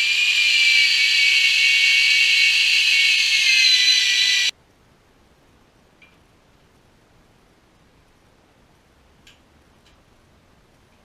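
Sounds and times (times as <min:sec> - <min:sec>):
electric drill whining: 0:00.0 - 0:04.5.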